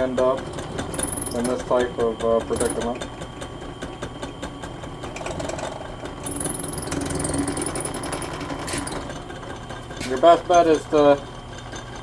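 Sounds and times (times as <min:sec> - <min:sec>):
power drill boring into bolt: 0:00.9 - 0:01.7, 0:02.5 - 0:02.9.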